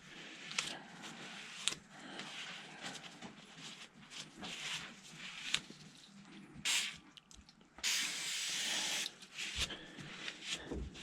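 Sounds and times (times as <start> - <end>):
aerosol spray hissing: 6.7 - 6.9, 7.8 - 9.1.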